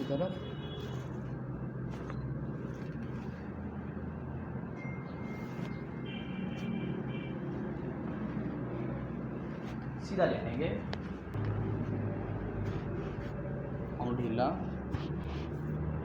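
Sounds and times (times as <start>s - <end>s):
low hum: 11.2s - 14.0s.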